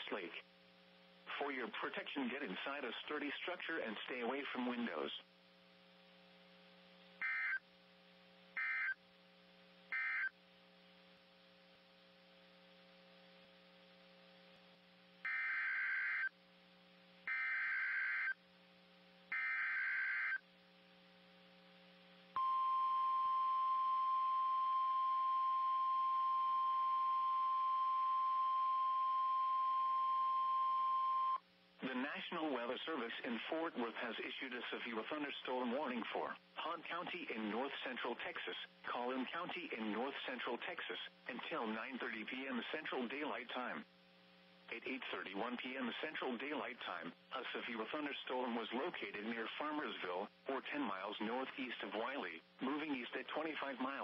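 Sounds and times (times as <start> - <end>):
faint low hum: 0.0 - 54.0
steady warning alarm tone: 7.2 - 7.6, 8.6 - 9.0, 9.9 - 10.3, 15.2 - 16.3, 17.3 - 18.4, 19.3 - 20.4, 22.4 - 31.4.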